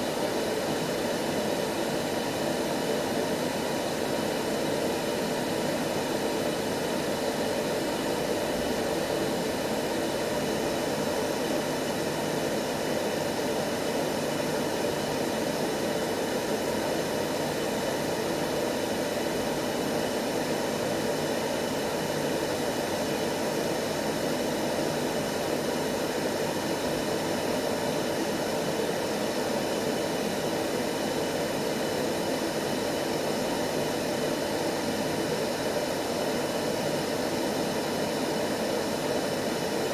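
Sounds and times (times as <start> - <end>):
steady white noise: 0.0 - 39.9.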